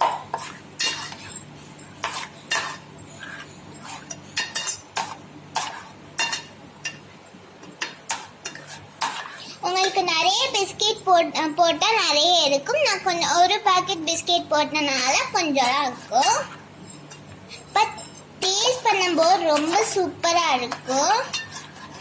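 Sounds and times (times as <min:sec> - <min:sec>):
spoon stirring in a bowl: 0:00.0 - 0:10.8, 0:14.9 - 0:20.0, 0:20.6 - 0:22.0.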